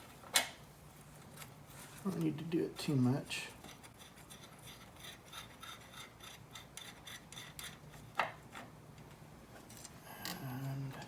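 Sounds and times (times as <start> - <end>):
wrench clicking and scraping metal: 3.7 - 8.7.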